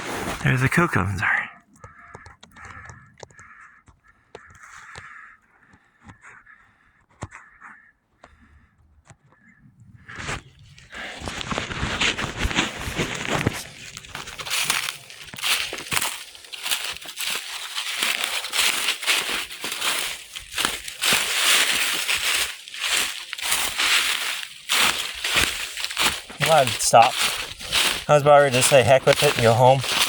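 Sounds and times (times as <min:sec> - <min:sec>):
footsteps through dry leaves: 0:10.4 - 0:30.0.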